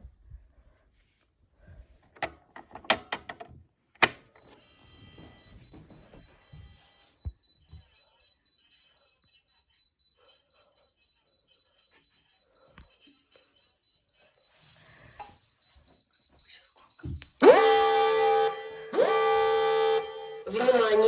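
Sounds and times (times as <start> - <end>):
fire alarm sounder beeping: 4.3 - 21.0.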